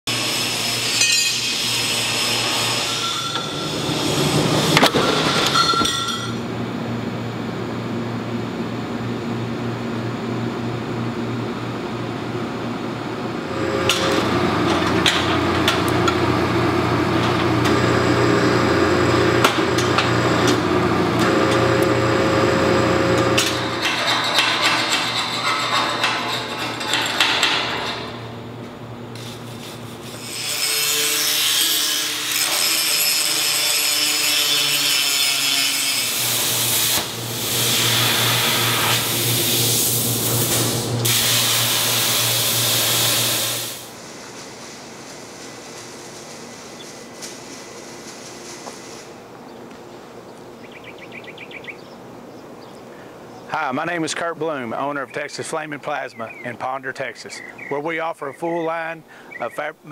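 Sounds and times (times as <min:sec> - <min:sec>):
electrical machine hum: 0:01.6 - 0:30.3, 0:36.1 - 0:59.9
metal clanks: 0:23.2 - 0:28.3.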